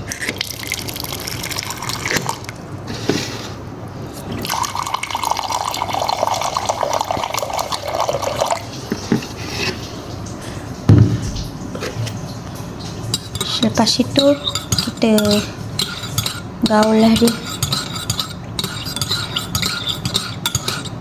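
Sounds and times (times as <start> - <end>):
water poured into a cup: 4.2 - 10.6, 11.2 - 20.8
dull knock: 10.9 - 11.4.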